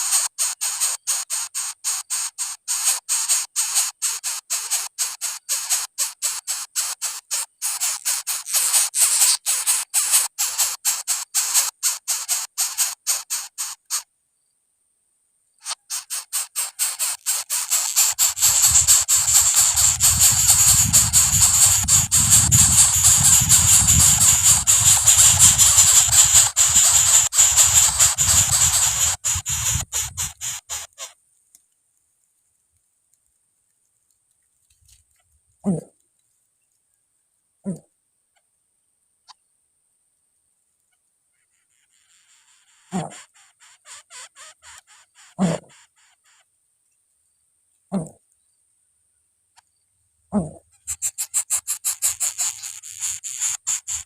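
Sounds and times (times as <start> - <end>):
loud hissing: 0.0 - 14.0, 15.6 - 31.1, 50.4 - 54.0
nestling rasping begging calls: 0.0 - 14.1, 15.6 - 31.2, 41.4 - 46.4, 50.4 - 54.0.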